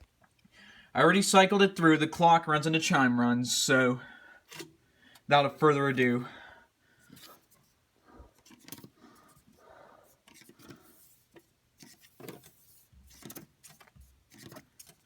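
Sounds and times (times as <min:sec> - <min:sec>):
clock works clicking and scraping: 0:10.2 - 0:15.0.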